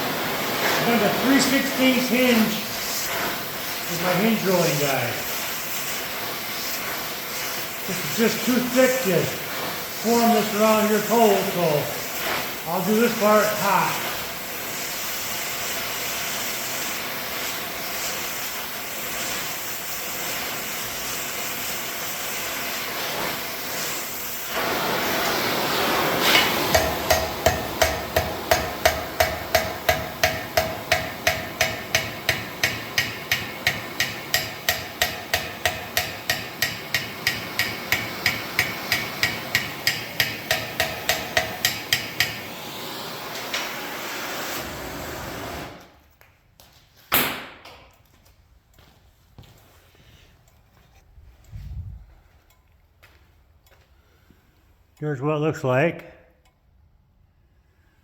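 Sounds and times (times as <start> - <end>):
hammer striking hot steel: 0.6 - 44.6.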